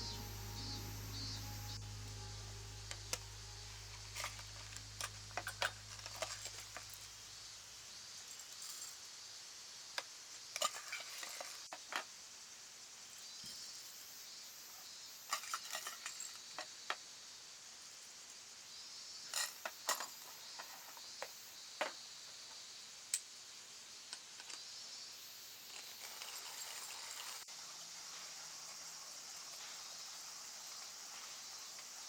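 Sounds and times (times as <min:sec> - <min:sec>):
steady high hiss: 0:00.0 - 0:08.2.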